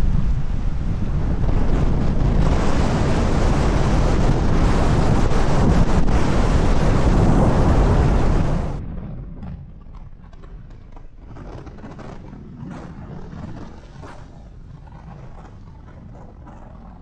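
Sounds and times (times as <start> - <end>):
strong wind buffeting microphone: 0.0 - 17.0.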